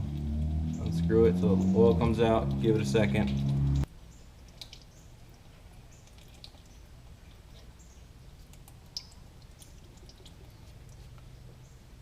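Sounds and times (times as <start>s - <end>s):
oil dripping: 0.0s - 12.0s.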